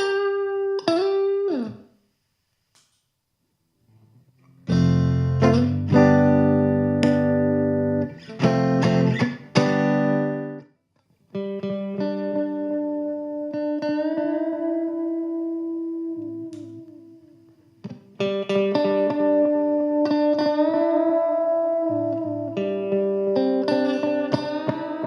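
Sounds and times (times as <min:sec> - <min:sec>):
electric guitar chords: 0:00.0 - 0:01.8, 0:04.1 - 0:10.7, 0:11.3 - 0:25.0.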